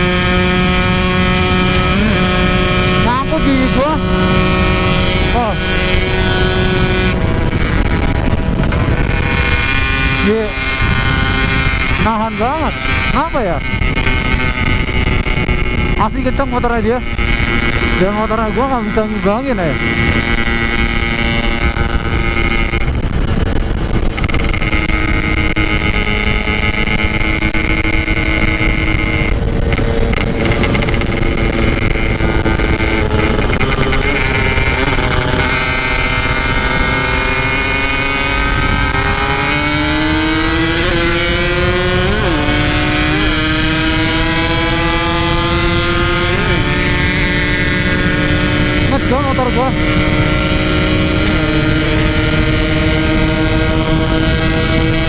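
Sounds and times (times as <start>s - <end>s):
motorcycle engine revving: 0.0s - 55.0s
wind noise: 0.0s - 55.0s.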